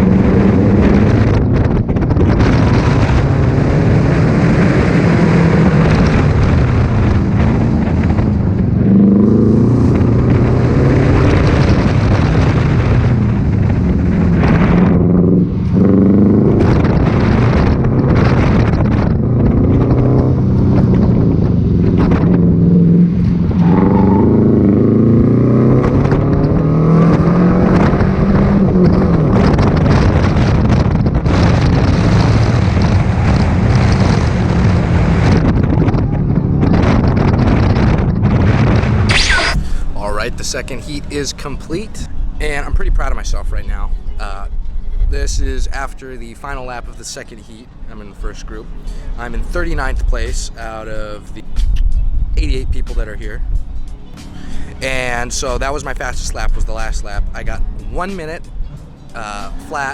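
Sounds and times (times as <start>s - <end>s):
car engine accelerating hard: 0.0s - 44.9s
wind and road noise: 0.0s - 59.9s.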